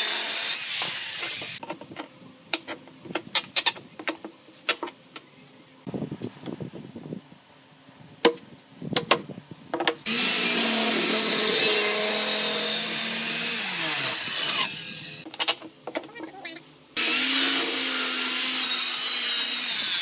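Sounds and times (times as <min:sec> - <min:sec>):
power saw cutting wood: 0:00.0 - 0:01.6, 0:10.1 - 0:15.2, 0:17.0 - 0:20.0.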